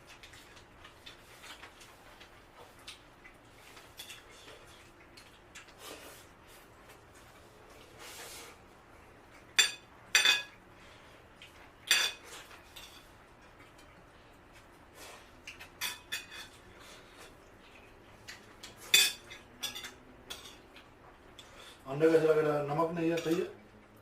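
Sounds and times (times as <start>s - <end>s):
cutlery clinking on plates: 9.5s - 10.6s, 11.8s - 13.1s, 15.5s - 16.7s, 18.3s - 20.8s, 23.1s - 23.5s.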